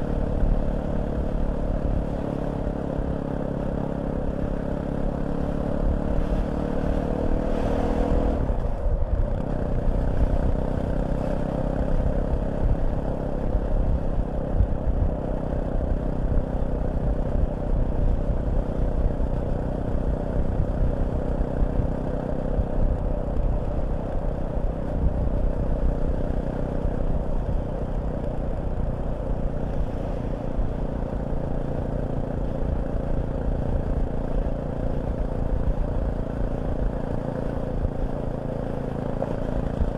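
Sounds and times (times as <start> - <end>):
motorcycle engine running: 0.0 - 39.9
heavy low rumble: 22.6 - 39.9.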